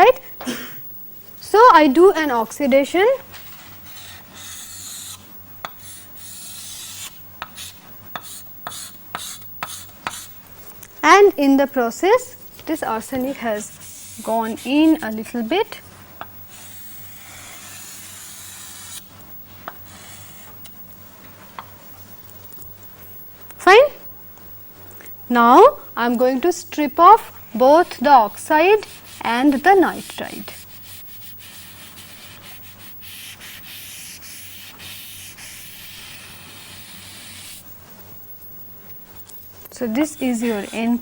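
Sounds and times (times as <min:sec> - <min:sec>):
low electrical hum: 0:00.0 - 0:41.0
pen scratching on paper: 0:03.6 - 0:05.2, 0:13.0 - 0:15.2, 0:16.5 - 0:19.1, 0:19.9 - 0:20.5, 0:28.8 - 0:37.6.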